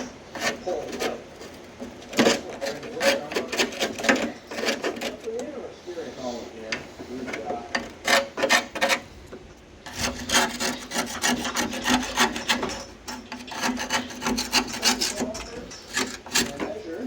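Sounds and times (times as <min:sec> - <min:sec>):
screwdriver scraping metal: 0:00.0 - 0:05.4, 0:06.7 - 0:17.0.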